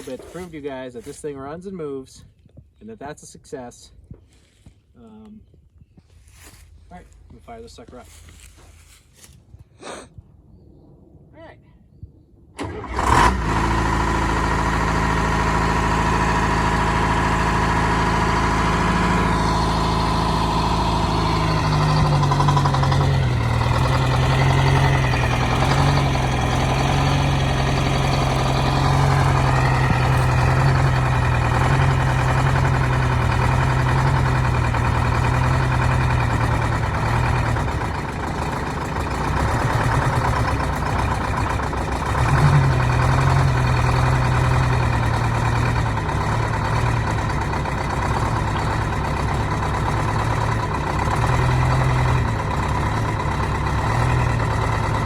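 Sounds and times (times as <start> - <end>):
excavator diesel engine: 0.0 - 1.3, 12.6 - 55.0.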